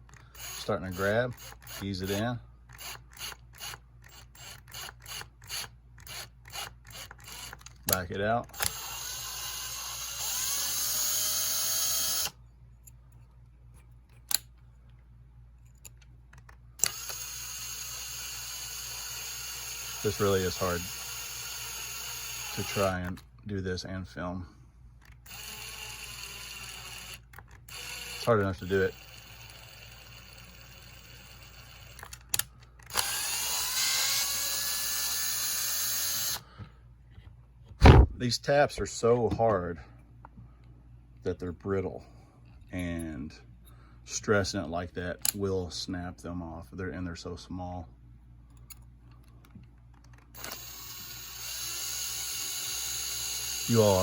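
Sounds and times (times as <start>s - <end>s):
small electric drill whirring: 0.0s - 7.9s, 8.5s - 12.4s, 16.8s - 23.1s, 25.2s - 36.5s, 50.2s - 54.0s.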